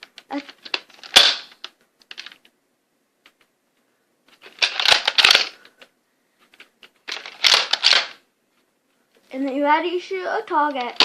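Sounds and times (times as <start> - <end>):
toy pistol plastic clicking and rattling: 4.4 - 5.9, 6.5 - 8.2.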